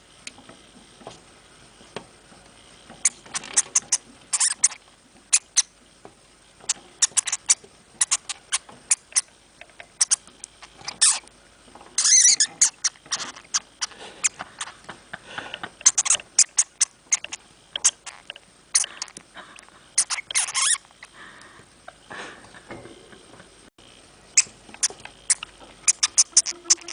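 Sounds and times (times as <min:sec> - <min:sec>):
hamster clicking and scratching: 0:03.0 - 0:05.7, 0:06.7 - 0:11.2, 0:15.6 - 0:19.2.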